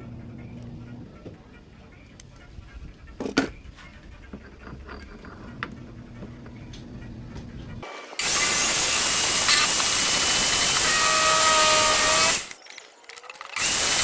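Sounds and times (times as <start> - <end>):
loud steady hissing: 8.2 - 12.6.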